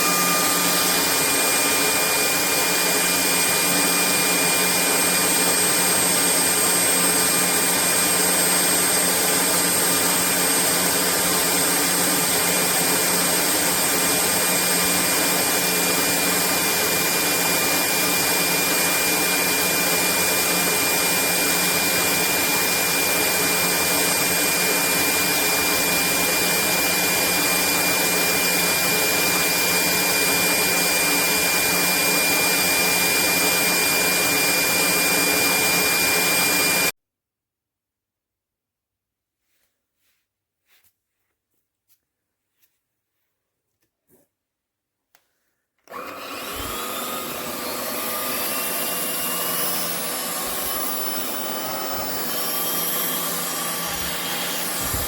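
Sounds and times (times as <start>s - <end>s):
stick vacuum cleaner running: 0.0s - 36.9s, 45.8s - 55.0s.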